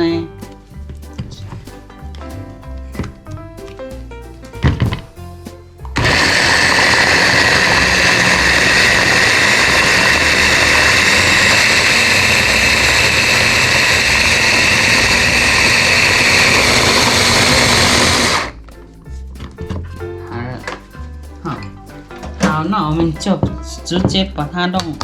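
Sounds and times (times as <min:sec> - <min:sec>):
electric blender grinding: 0:06.0 - 0:18.6.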